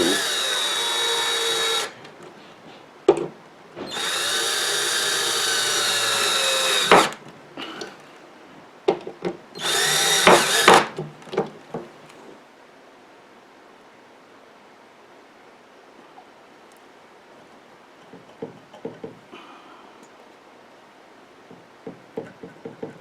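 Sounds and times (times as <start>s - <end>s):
power drill driving screws: 0.0s - 2.0s, 3.8s - 7.2s, 9.6s - 11.0s
wood and tool handling knocks: 3.1s - 4.2s, 10.2s - 11.9s.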